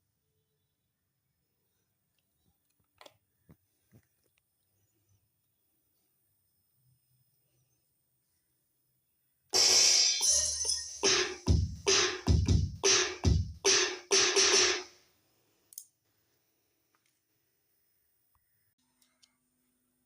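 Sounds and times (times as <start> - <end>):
electronic drum hits: 9.6 - 14.9.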